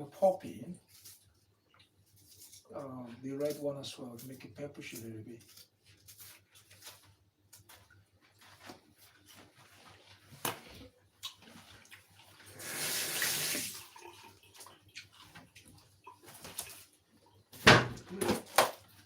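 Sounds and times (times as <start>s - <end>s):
kitchen tap running: 12.4s - 16.3s.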